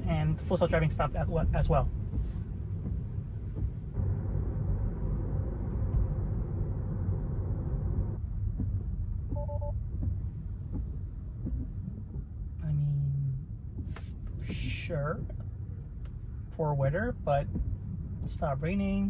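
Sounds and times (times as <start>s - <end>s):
car cabin road rumble: 0.0s - 19.0s
two-note beep: 9.4s - 9.8s.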